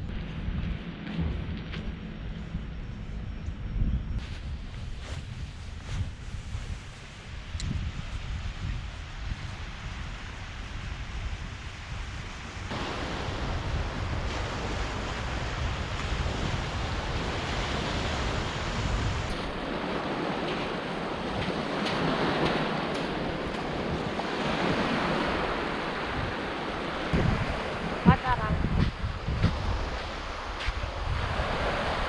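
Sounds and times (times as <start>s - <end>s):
wind buffeting microphone: 0.0s - 32.0s
waves washing on shore: 8.8s - 32.0s.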